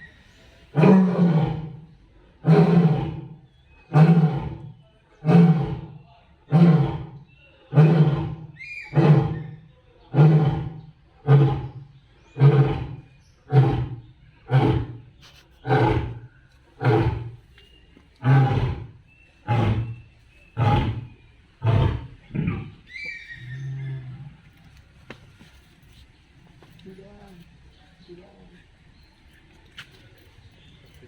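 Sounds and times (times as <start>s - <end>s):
lion roaring: 0.7s - 17.4s, 18.2s - 22.8s.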